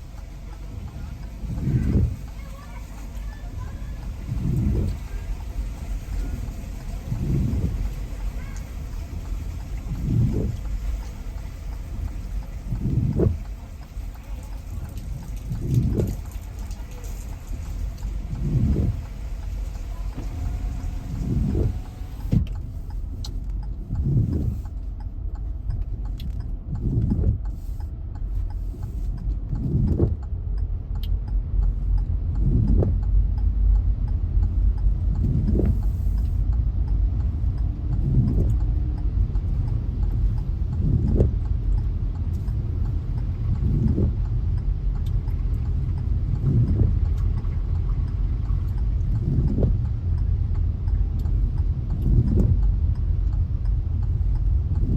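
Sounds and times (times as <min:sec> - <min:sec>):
car engine rumble from cabin: 0:00.0 - 0:54.9.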